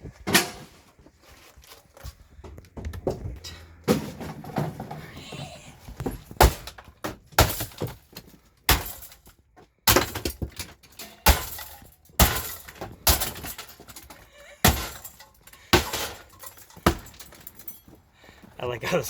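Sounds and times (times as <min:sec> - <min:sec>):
debris rattling: 0:00.0 - 0:18.0
heavy blows breaking fittings: 0:02.8 - 0:18.0.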